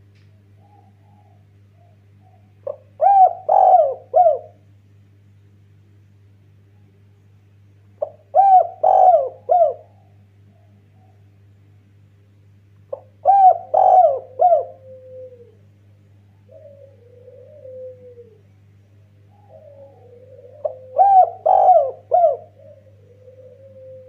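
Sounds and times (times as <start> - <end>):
steady low hum: 0.0 - 24.0
dove cooing: 0.4 - 4.7, 8.0 - 11.3, 12.9 - 15.7, 16.3 - 24.0.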